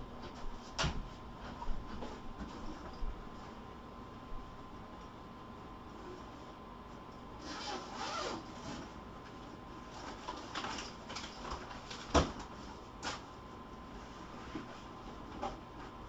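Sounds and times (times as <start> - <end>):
rustling and clicks of handling: 8.7 - 13.3.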